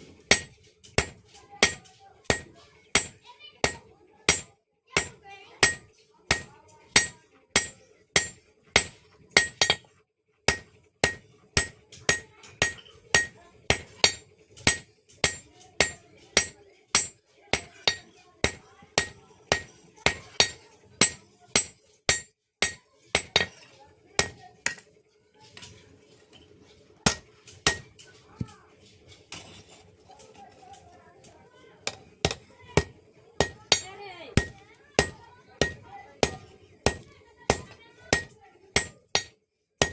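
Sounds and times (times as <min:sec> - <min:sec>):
hammer ringing on metal: 0:00.3 - 0:09.8, 0:10.5 - 0:23.5, 0:27.1 - 0:27.9, 0:31.8 - 0:39.9.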